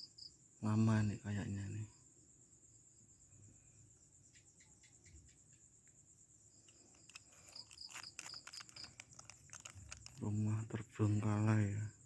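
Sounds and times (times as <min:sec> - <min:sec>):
crickets chirping: 0:00.0 - 0:12.0
sharp clicks: 0:06.6 - 0:10.2.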